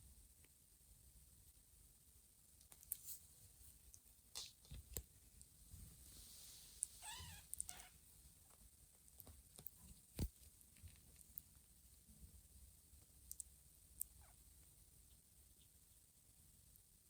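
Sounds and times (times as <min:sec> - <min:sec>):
kitten mewing: 0:07.0 - 0:08.0.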